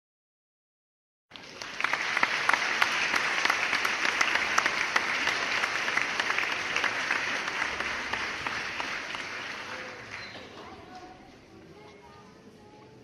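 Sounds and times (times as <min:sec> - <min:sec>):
crowd applauding: 0:01.3 - 0:11.0.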